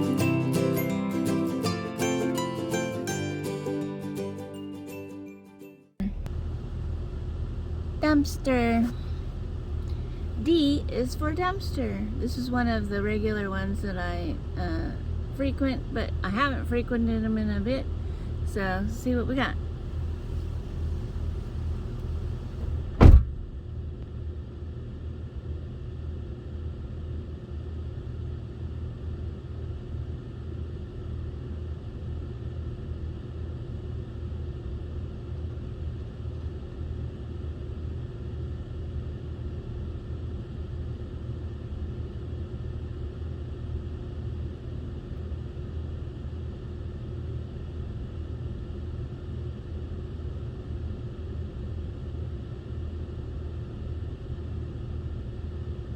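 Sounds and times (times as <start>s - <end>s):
car engine idling: 6.0s - 23.8s
sharp loud bang: 22.7s - 23.5s.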